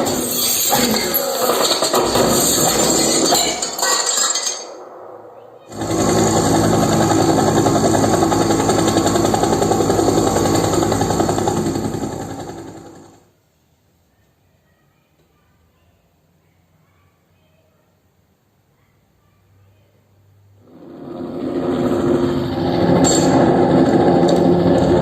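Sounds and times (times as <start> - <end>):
loud clattering burst: 0.0 - 13.2, 20.7 - 25.0
dense fast-pulsing rattle: 4.4 - 13.2, 20.7 - 25.0.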